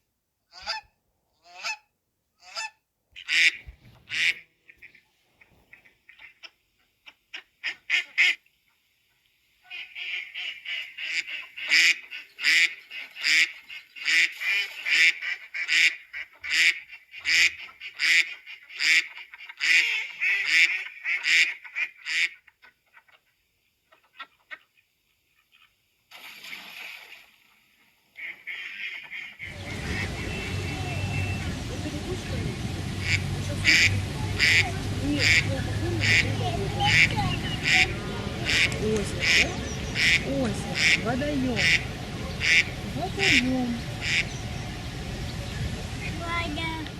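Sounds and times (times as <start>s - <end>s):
geese and ducks calling: 9.7s - 23.3s, 28.2s - 46.5s.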